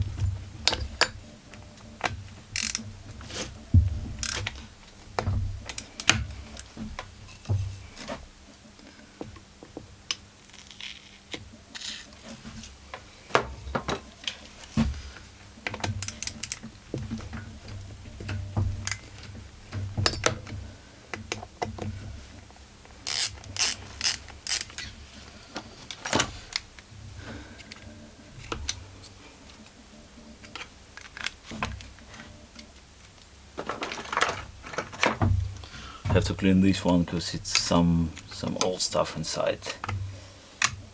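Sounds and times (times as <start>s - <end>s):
screwdriver clicking on screws: 2.6s - 2.8s, 23.0s - 24.9s
small parts being handled: 2.6s - 8.3s, 23.0s - 26.9s, 33.5s - 36.8s.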